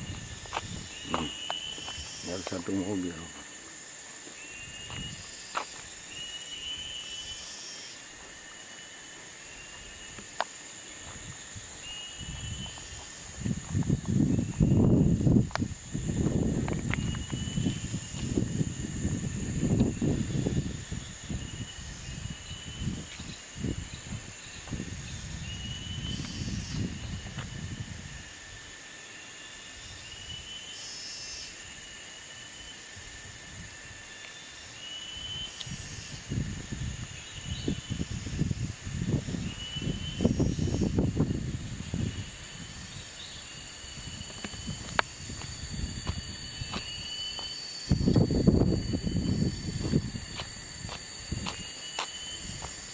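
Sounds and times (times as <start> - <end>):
insects droning: 0.0 - 52.9.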